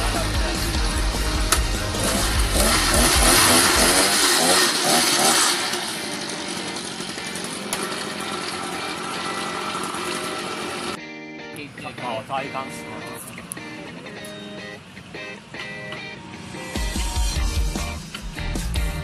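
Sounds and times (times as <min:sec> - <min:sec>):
small two-stroke engine revving: 0:00.0 - 0:11.0.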